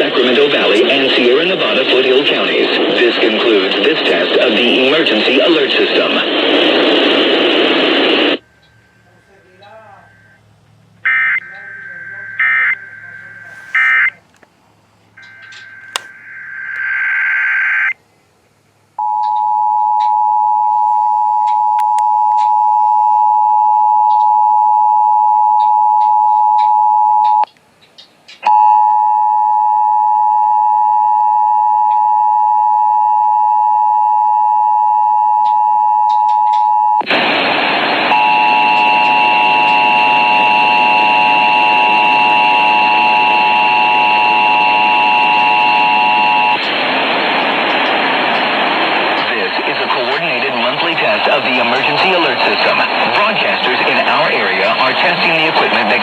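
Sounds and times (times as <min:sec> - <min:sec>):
loud radio static hiss: 0:00.0 - 0:10.4, 0:11.4 - 0:14.5, 0:15.4 - 0:17.0, 0:37.0 - 0:56.0
two-tone alarm: 0:08.4 - 0:10.4, 0:11.0 - 0:14.2, 0:15.2 - 0:18.0, 0:19.0 - 0:27.5, 0:28.5 - 0:37.0, 0:38.1 - 0:46.6.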